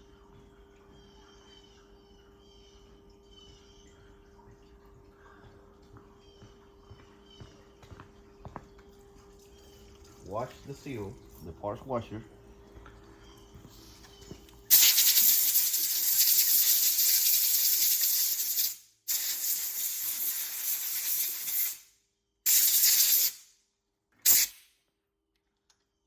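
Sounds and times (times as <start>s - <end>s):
compressed air hissing: 14.7s - 21.9s, 22.5s - 23.4s, 24.3s - 24.6s.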